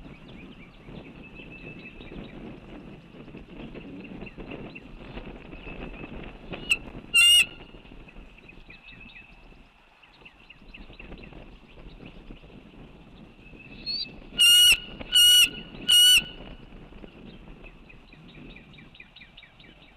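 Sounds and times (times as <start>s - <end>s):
distant waterfowl calling: 6.6s - 7.6s, 13.9s - 16.4s
loud sharp bird call: 13.9s - 16.4s.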